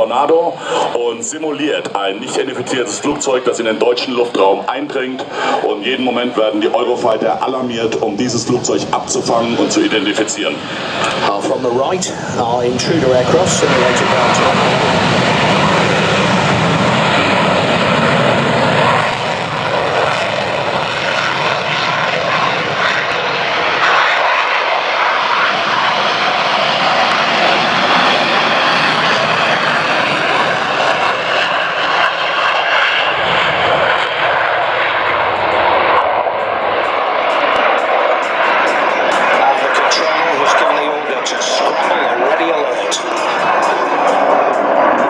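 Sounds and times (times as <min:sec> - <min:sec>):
fighter jet engine roar: 0:00.0 - 0:45.0.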